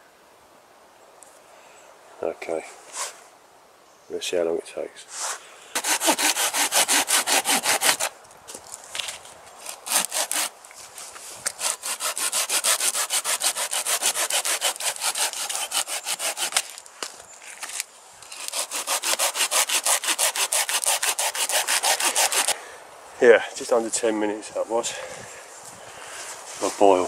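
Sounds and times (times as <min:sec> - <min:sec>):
hand saw cutting wood: 0:05.8 - 0:08.1, 0:09.6 - 0:10.5, 0:11.5 - 0:16.8, 0:18.3 - 0:22.6.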